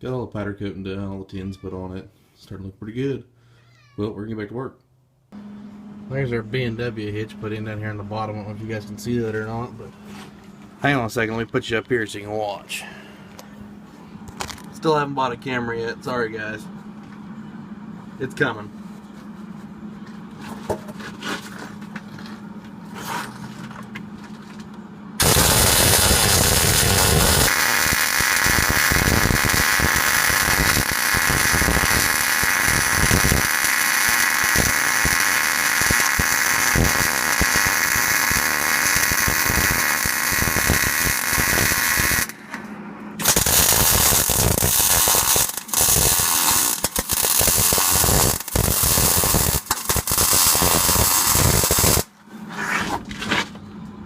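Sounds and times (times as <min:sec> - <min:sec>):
low hum: 0:05.1 - 0:27.6, 0:41.2 - 0:47.1
welding arc crackling: 0:25.2 - 0:42.4, 0:43.2 - 0:52.1.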